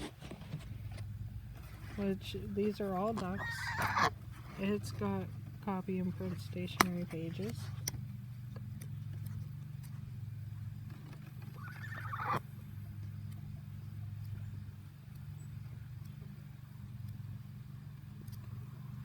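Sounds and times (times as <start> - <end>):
steady low hum: 0.0 - 19.0
drawn-out animal call: 1.6 - 7.7, 10.5 - 13.0.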